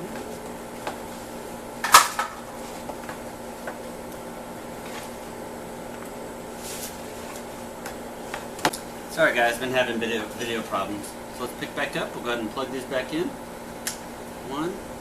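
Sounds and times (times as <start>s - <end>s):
steady background hum: 0.0s - 15.0s.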